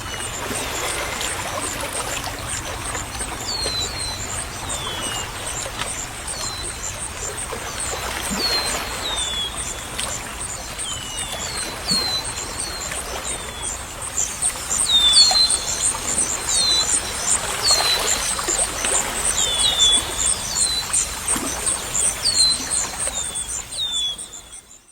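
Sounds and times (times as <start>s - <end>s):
running water: 0.2s - 8.8s, 14.1s - 24.9s
birds chirping falling whistles: 2.0s - 7.0s, 14.2s - 24.9s.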